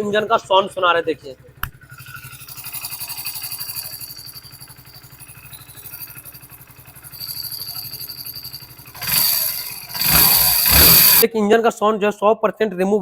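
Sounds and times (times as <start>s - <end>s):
motorcycle engine running: 0.0s - 11.2s.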